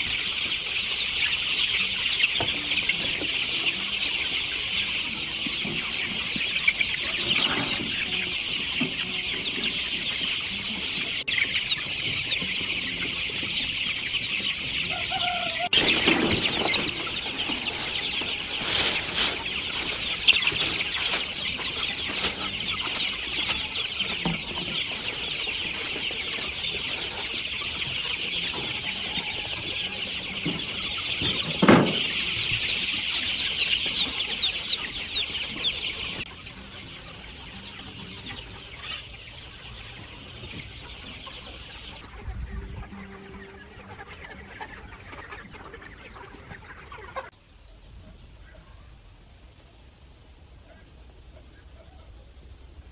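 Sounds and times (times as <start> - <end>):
chickens clucking: 0.0 - 52.9
high-pitched chatter: 14.6 - 33.0
thump: 31.6 - 32.1.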